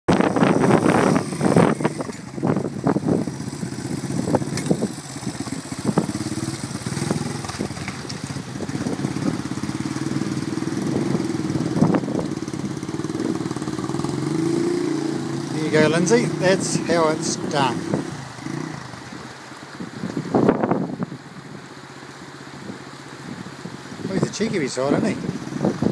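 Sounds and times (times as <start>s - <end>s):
dirt bike engine running: 0.1s - 19.3s.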